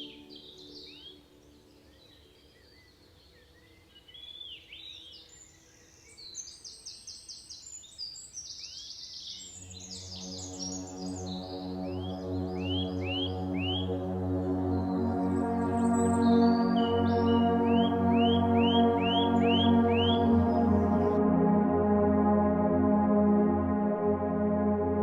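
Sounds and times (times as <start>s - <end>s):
birds chirping: 9.2s - 21.2s
droning ambient music pad: 9.4s - 25.0s
bird trilling high notes: 11.9s - 14.2s, 14.8s - 21.2s.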